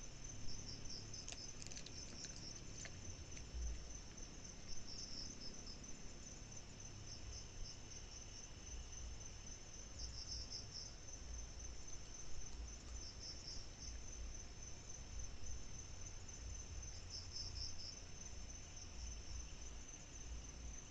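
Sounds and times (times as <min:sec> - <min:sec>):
crickets trilling: 0:00.0 - 0:20.9
faint low rumble: 0:00.0 - 0:20.9.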